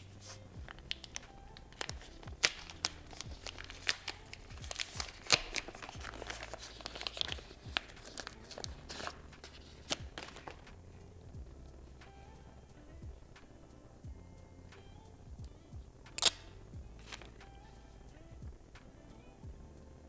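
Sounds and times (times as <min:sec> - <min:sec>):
packaging crinkling and rustling: 0:00.7 - 0:10.7.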